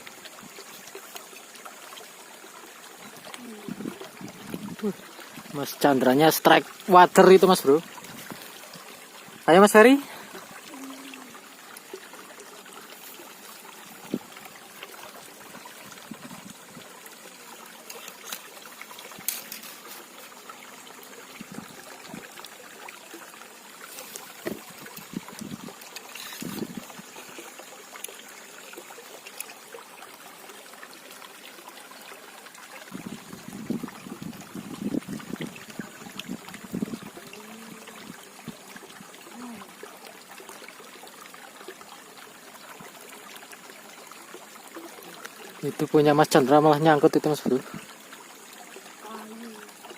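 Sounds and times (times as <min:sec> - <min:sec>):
water trickling: 0:00.0 - 0:49.9.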